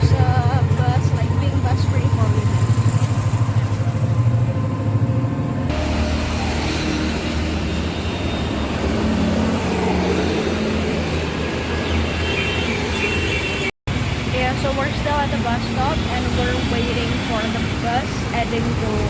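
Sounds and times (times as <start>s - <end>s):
engine rumble: 0.0s - 11.9s
steady traffic noise: 0.0s - 19.0s.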